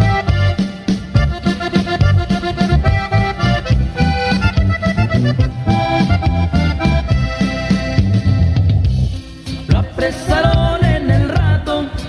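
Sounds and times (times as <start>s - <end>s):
accordion melody: 0.0s - 12.0s
bass and guitar rhythm: 0.0s - 12.0s.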